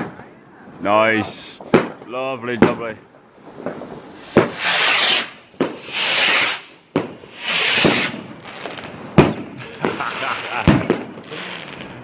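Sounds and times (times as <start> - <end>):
firework bang: 1.6 - 2.8, 3.4 - 12.0
firework rockets launching: 3.4 - 12.0.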